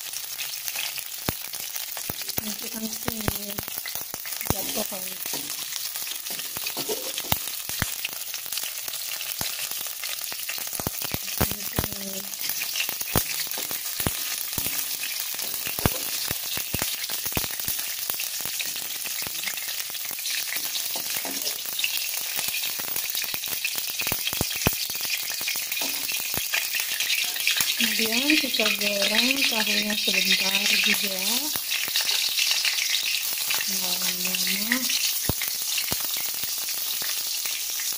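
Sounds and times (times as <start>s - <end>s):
oil sizzling in a frying pan: 0.0s - 37.9s
spatula tapping and scraping pan: 5.2s - 7.9s, 25.8s - 27.7s.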